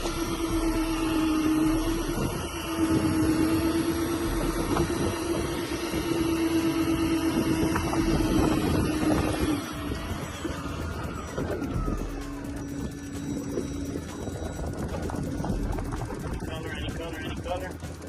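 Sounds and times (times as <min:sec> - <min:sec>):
outboard engines idling: 0:00.0 - 0:18.0.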